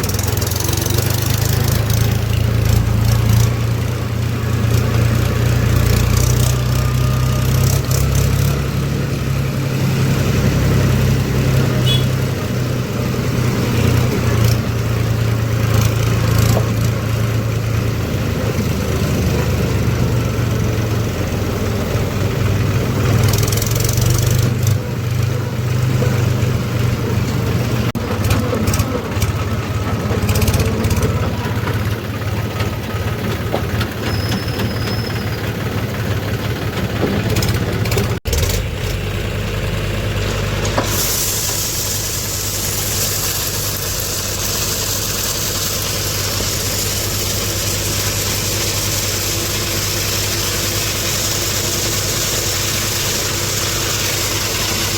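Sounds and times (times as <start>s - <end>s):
diesel engine running: 0.0s - 54.9s
knocks and clatter: 27.2s - 39.0s.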